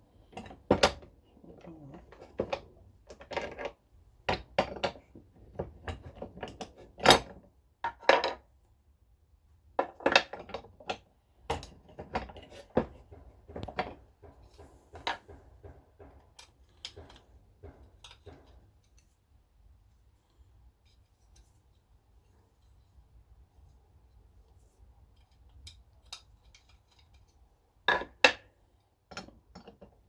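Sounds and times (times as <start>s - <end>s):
metal and plastic parts clattering: 0.1s - 8.4s, 9.8s - 19.2s, 24.5s - 30.0s.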